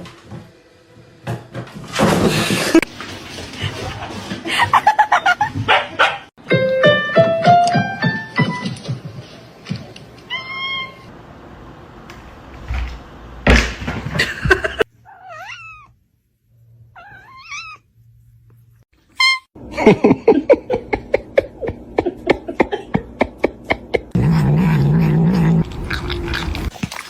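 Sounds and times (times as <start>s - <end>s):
cats meowing: 15.0s - 16.0s, 17.0s - 17.8s.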